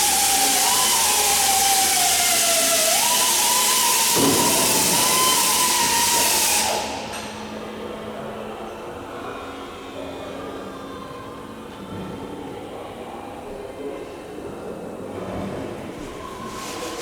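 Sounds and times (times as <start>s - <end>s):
air tool whining: 0.0s - 7.9s.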